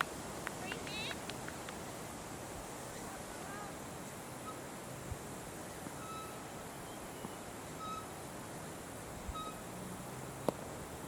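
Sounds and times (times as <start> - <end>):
open-air background noise: 0.0 - 11.0
bird whistling: 9.3 - 9.6.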